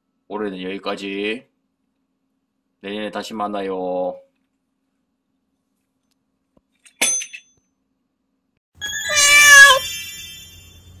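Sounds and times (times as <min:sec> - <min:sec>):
cat meowing: 0:09.0 - 0:09.9.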